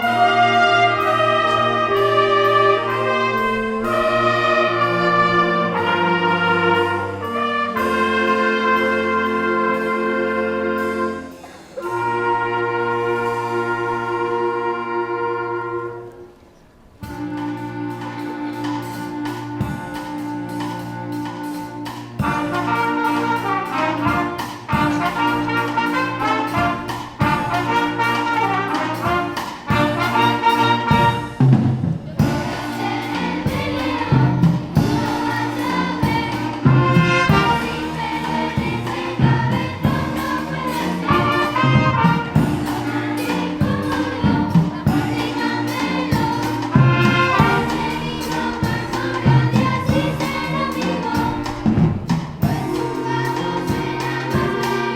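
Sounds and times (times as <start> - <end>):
voices singing: 0.0 - 16.2, 22.2 - 31.4, 32.1 - 54.9
brass instruments: 0.0 - 54.9
steady percussive beat: 17.0 - 54.9.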